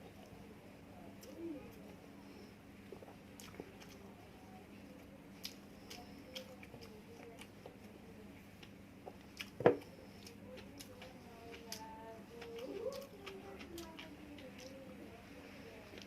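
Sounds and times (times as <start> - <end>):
person chewing food: 2.8 - 4.1, 5.0 - 14.8.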